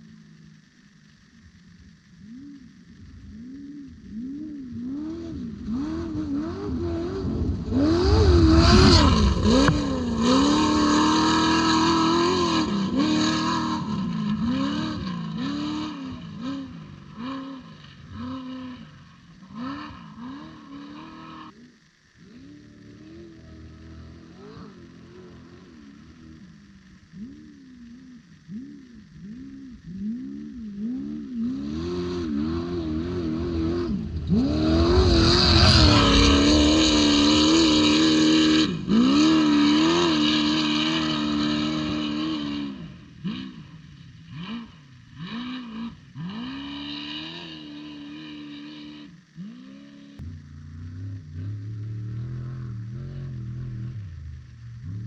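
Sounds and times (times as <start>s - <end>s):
deeper engine rumble: 0.0s - 20.3s, 21.6s - 45.3s, 50.2s - 55.0s
engine revving hard: 4.9s - 18.8s, 30.0s - 54.1s.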